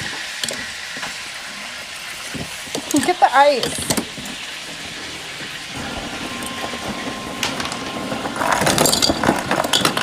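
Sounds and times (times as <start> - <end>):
ice dispenser whirring: 0.0 - 10.0
ice cubes clattering: 6.4 - 10.0.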